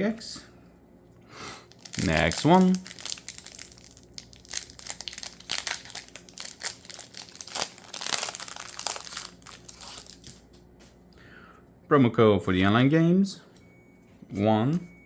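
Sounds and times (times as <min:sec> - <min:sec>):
foil wrapper crinkling: 0:01.7 - 0:10.6.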